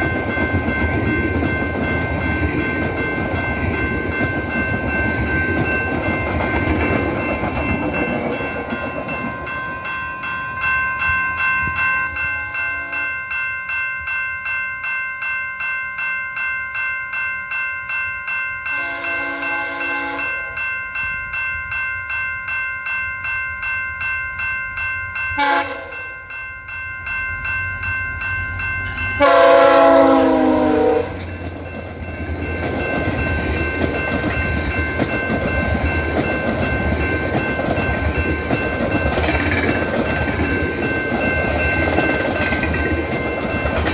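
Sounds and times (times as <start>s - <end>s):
train running with rhythmic clicking: 0.0s - 43.9s
train air horn blasts: 18.8s - 20.6s, 25.4s - 26.0s, 29.2s - 31.2s.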